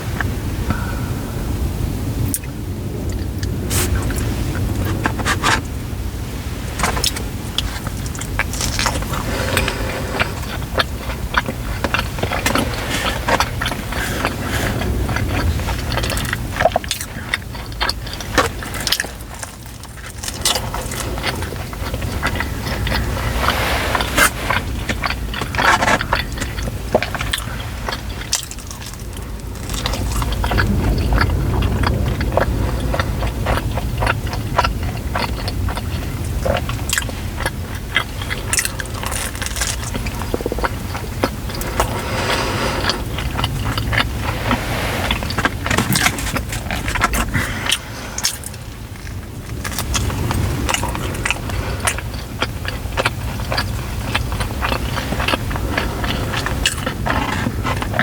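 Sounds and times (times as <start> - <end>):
low hum: 0.0 - 36.5
person chewing food: 2.2 - 58.0
crunching: 2.3 - 58.0.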